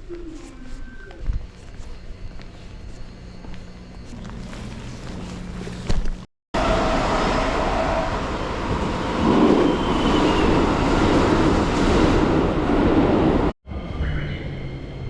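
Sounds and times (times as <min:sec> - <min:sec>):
train wheels rumbling on rails: 0:06.6 - 0:13.5.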